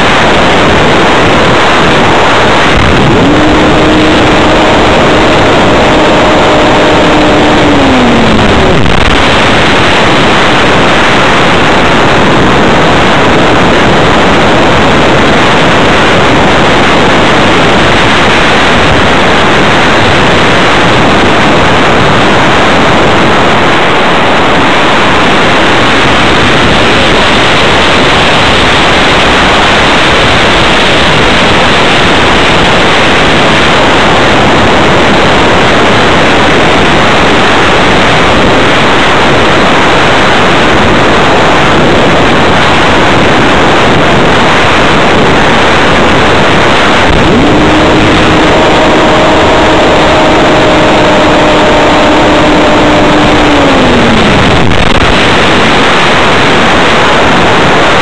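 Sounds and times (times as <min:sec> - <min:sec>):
electric motor and propeller whining: 0:00.0 - 0:21.5, 0:46.6 - 0:55.6
wind rush over microphone: 0:00.0 - 0:58.0.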